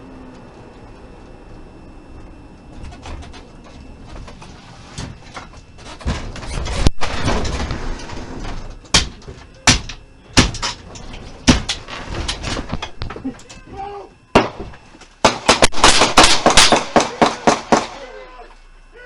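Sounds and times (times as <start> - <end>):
sharp loud bangs: 8.9 - 10.8, 14.3 - 18.0.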